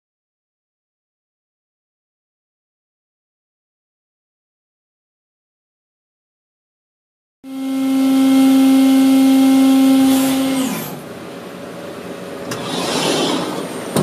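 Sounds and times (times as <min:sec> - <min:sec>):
machine spindle whining: 0:07.5 - 0:11.1, 0:12.4 - 0:14.0.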